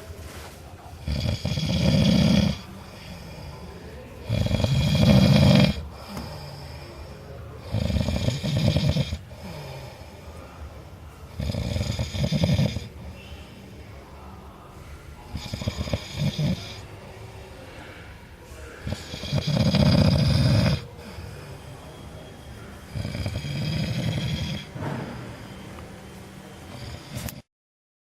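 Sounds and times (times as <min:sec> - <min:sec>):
quiet breathing: 0:00.0 - 0:27.4
man snoring: 0:01.0 - 0:07.0, 0:07.6 - 0:10.1, 0:11.3 - 0:12.9, 0:15.3 - 0:16.8, 0:18.8 - 0:22.0, 0:22.8 - 0:24.8, 0:26.7 - 0:27.5.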